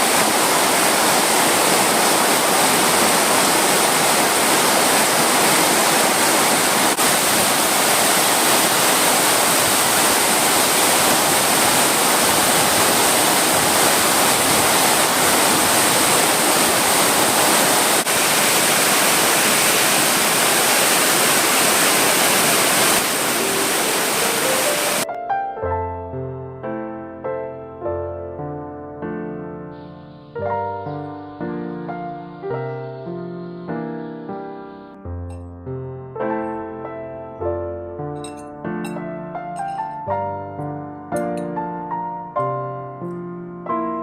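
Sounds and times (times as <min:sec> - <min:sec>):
rushing water: 0:00.0 - 0:25.1
soft piano music: 0:23.1 - 0:44.0.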